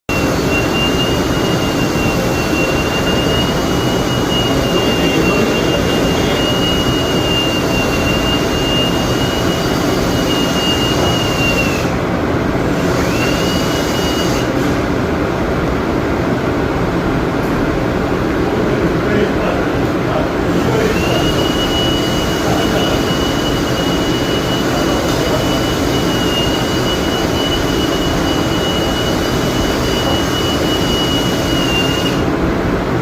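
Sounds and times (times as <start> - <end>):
thin high whine: 0.1 - 12.0, 20.2 - 32.4
duct-cleaning machinery rushing: 0.1 - 33.0.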